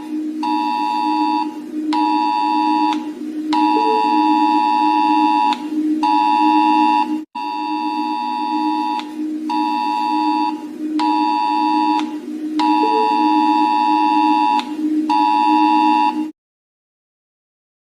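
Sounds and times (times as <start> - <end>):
pulsed two-tone alert beep: 0.0 - 16.3
steady low drone: 0.0 - 16.3.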